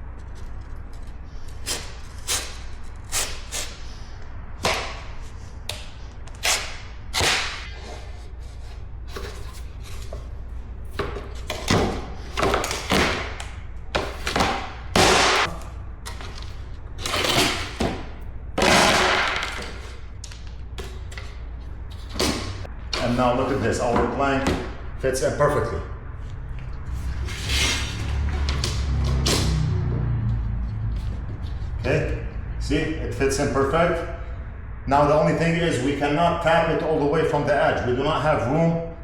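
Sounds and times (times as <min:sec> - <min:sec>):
knife scraping vinyl plank: 0:06.4 - 0:10.2.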